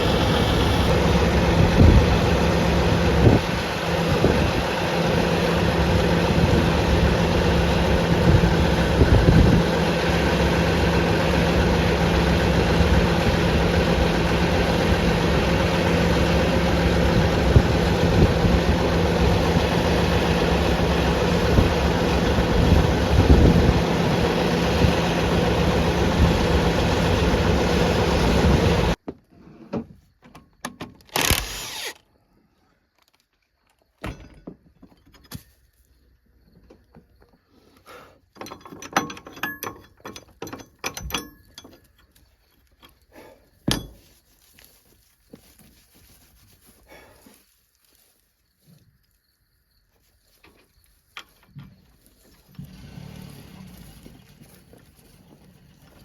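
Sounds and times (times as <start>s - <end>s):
harvest machinery engine drone: 0.0s - 29.0s, 52.0s - 56.0s.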